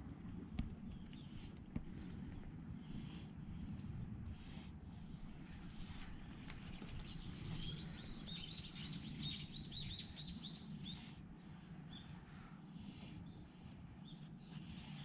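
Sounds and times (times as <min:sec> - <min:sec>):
low background rumble: 0:00.0 - 0:15.0
small songbirds chirping: 0:00.7 - 0:03.2, 0:05.8 - 0:15.0.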